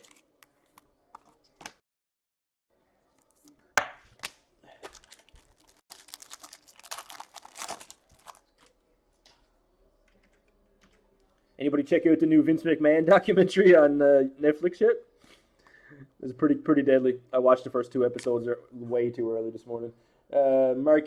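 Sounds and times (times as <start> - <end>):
foil wrapper crinkling and tearing: 4.2 - 8.8.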